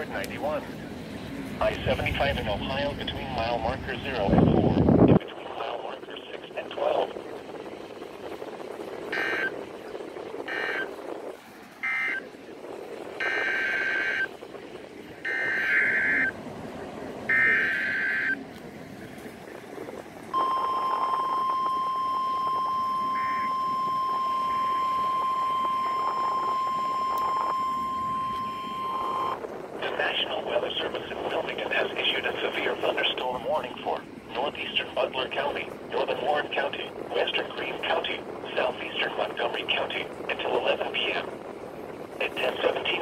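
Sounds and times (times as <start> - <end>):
radio hiss: 0.0 - 0.6, 1.6 - 7.2, 9.1 - 9.6, 10.4 - 11.0, 20.4 - 41.3, 42.2 - 43.0
high-pitched warning alarm tone: 13.2 - 14.3, 15.3 - 16.3, 17.3 - 18.4, 20.4 - 29.4
digital warbling data tones: 20.4 - 29.4.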